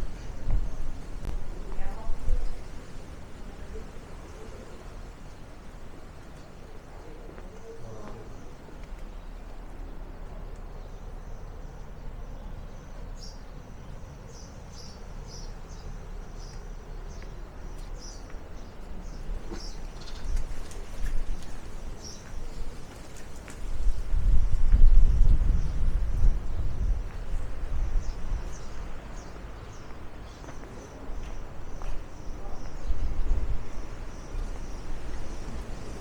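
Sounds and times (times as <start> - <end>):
small bird chirping: 10.5 - 21.2.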